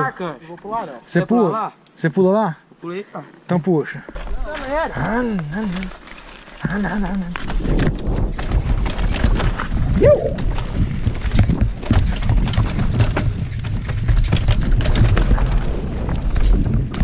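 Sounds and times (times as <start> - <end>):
bike rattling and knocking: 4.2 - 17.0
wind rumble on microphone: 6.6 - 17.0.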